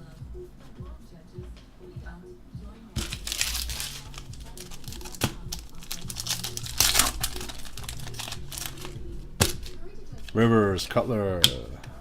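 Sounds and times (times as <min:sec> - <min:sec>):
foil wrappers crinkling: 0:03.0 - 0:10.5.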